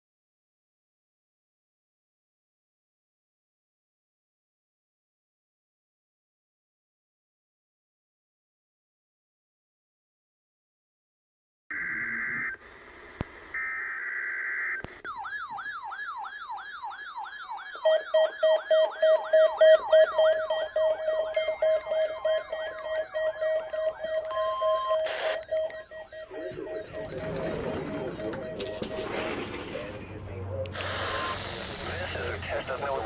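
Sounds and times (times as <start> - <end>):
sweeping alert alarm: 13.6 - 30.2
steady beeping tone: 17.7 - 30.0.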